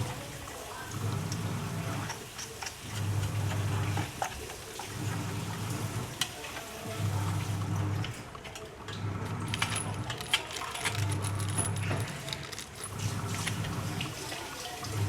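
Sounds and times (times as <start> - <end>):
metal parts clinking and rattling: 9.5 - 14.0.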